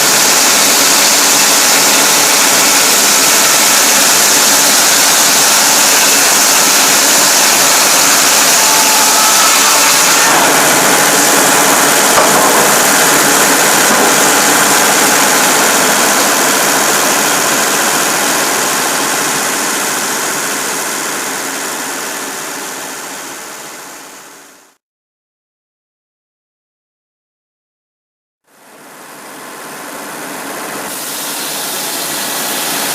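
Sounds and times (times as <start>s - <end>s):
diesel engine running: 0.0s - 9.5s, 10.3s - 24.6s.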